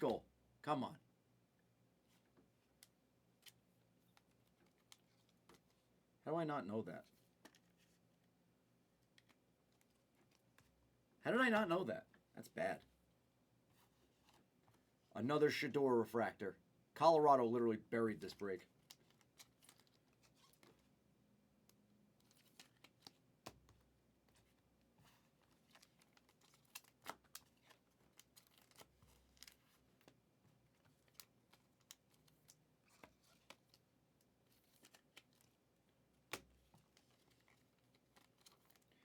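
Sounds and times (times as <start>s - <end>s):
light clicks of cards: 36.2s - 39.0s.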